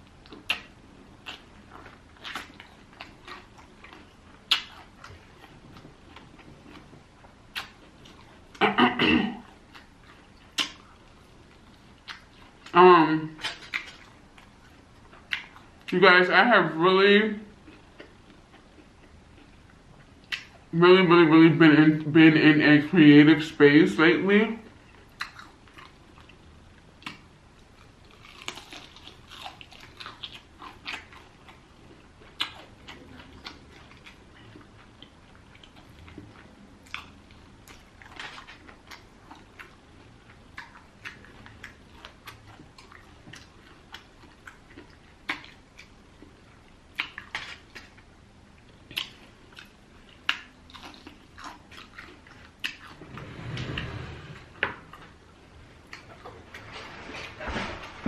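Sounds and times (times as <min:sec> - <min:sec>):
crisp chewing crunches: 0:00.0 - 0:08.6, 0:24.7 - 0:53.0.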